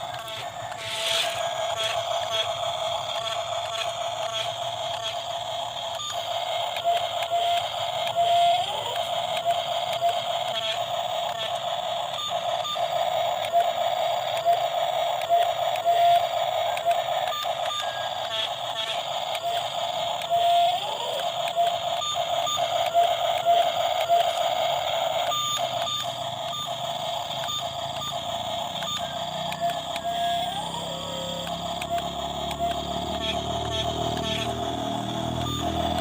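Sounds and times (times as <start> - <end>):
short gear clicks: 0.0 - 36.0
toy excavator motor whine: 0.0 - 36.0.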